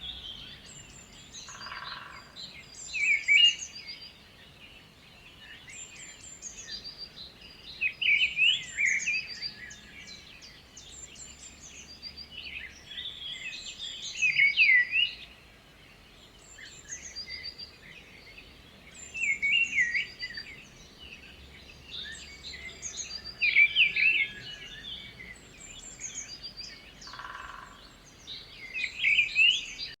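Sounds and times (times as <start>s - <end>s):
birds twittering: 0.0s - 3.0s, 16.7s - 30.0s
loud bird song phrase: 0.0s - 30.0s.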